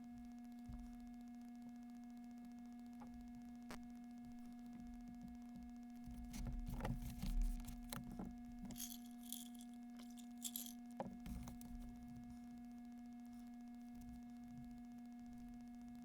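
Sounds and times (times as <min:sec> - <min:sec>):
electrical hum: 0:00.0 - 0:16.0
small objects tapping and rustling: 0:06.9 - 0:11.8.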